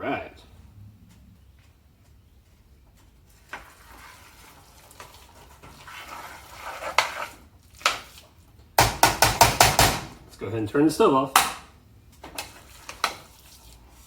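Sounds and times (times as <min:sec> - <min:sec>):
rice stirred and scraped in pan: 0:03.2 - 0:08.5, 0:12.4 - 0:14.0
utensil knocking against pan: 0:08.8 - 0:10.0.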